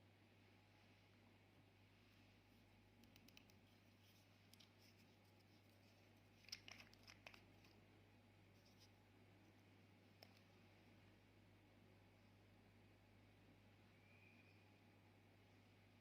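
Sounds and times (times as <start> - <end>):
faint clicks and crackles: 2.9 - 7.9, 8.6 - 10.7.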